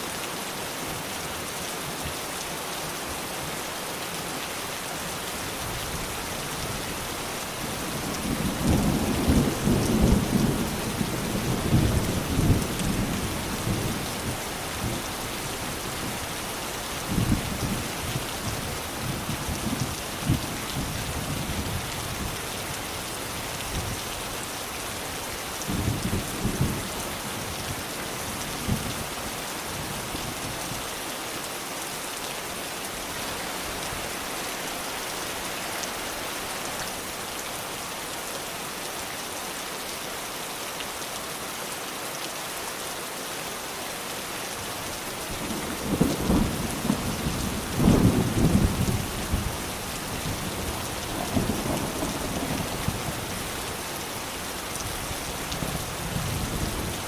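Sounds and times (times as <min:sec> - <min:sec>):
steady rain: 0:00.0 - 0:57.0
thunder rumbling: 0:50.2 - 0:53.4.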